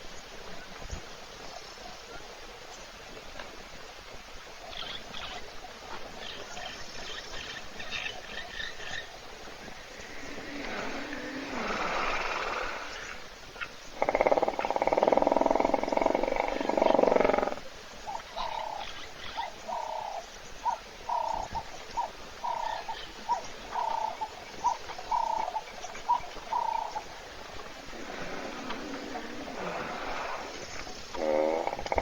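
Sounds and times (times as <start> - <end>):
hippopotamus rasping call: 27.7 - 32.0
hippopotamus grunts: 27.8 - 32.0.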